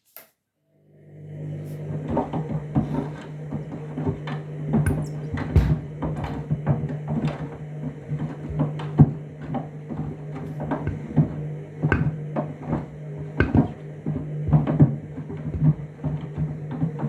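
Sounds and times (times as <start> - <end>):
washing machine motor hum: 0.8 - 17.0
shoes thumping in drum: 4.9 - 6.1.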